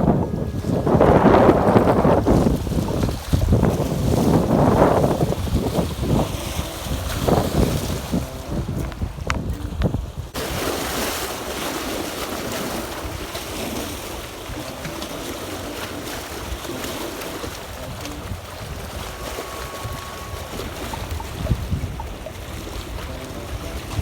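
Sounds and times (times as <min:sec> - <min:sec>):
sea waves washing: 0:00.0 - 0:24.0
strong wind on microphone: 0:00.0 - 0:24.0.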